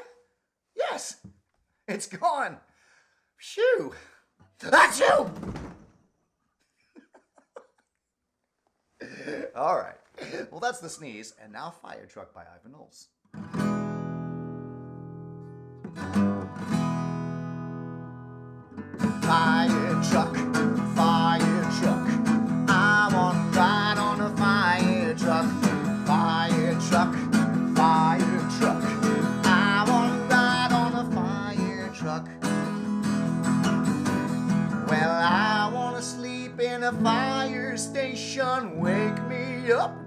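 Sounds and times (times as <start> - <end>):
acoustic guitar strums: 13.3 - 40.0
person singing: 19.2 - 32.7, 34.8 - 40.0.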